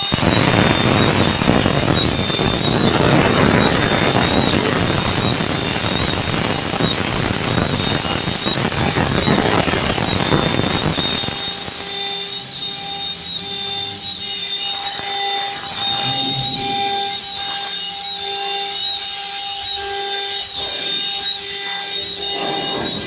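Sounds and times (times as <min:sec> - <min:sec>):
router cutting wood: 0:00.0 - 0:23.0
spindle high steady whine: 0:00.0 - 0:23.0
drive motors whining: 0:10.0 - 0:18.9.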